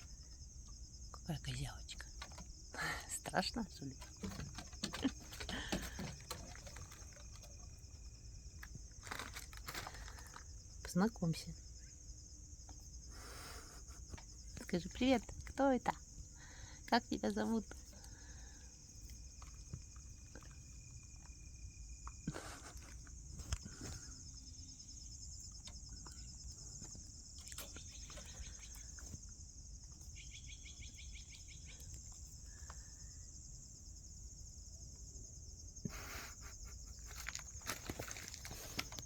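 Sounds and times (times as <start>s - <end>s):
crickets chirping: 0.0s - 39.0s
light clicks and rustles: 2.0s - 2.6s, 3.7s - 10.5s, 36.2s - 39.0s.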